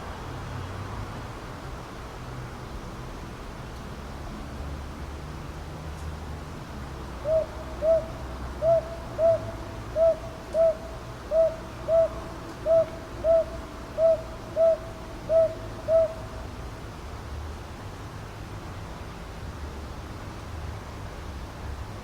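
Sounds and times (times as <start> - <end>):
owl hooting: 7.2 - 16.4.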